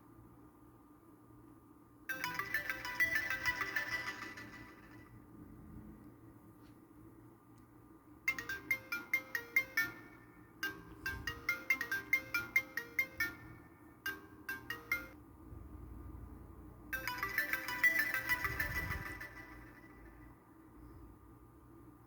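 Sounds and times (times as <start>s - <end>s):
phone ringtone: 2.1s - 5.2s, 8.3s - 15.2s, 16.9s - 20.4s.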